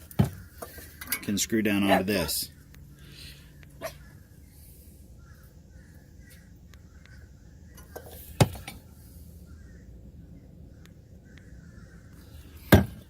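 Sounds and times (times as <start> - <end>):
faint bird calls: 1.8 - 13.0.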